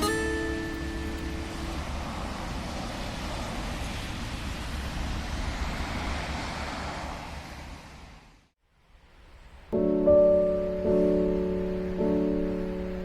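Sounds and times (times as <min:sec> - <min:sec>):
outdoor rushing noise: 0:00.3 - 0:08.5.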